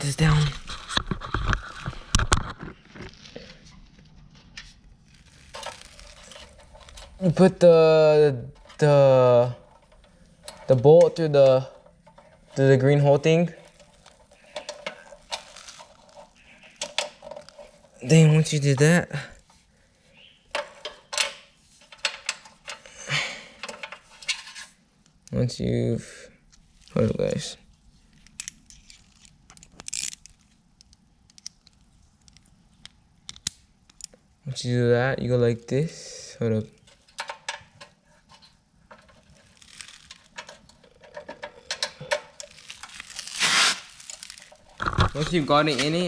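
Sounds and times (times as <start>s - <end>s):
metal parts clicking and knocking: 13.6s - 17.9s, 28.2s - 31.5s, 36.9s - 43.0s.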